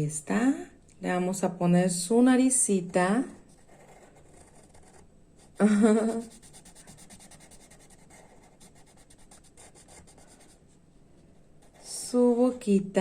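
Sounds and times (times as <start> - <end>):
pen scratching on paper: 3.4 - 10.6, 11.6 - 12.1.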